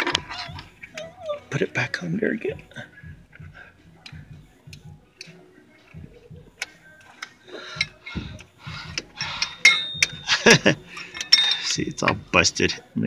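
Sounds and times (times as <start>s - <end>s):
metallic clanks: 6.6s - 12.4s
ratchet wrench clicking: 8.9s - 10.4s, 11.1s - 12.1s.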